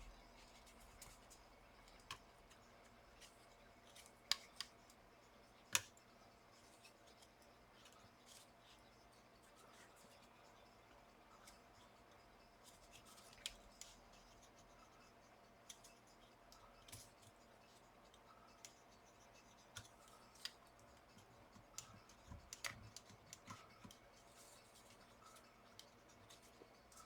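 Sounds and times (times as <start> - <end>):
tools clicking on laptop parts: 3.5 - 5.0, 18.0 - 27.0.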